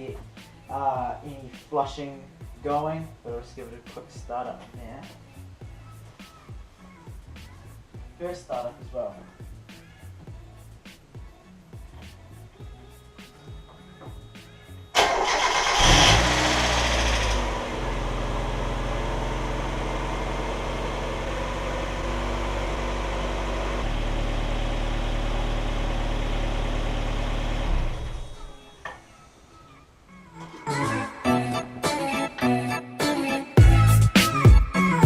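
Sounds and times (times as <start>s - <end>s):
car engine starting and idling: 14.9s - 28.6s.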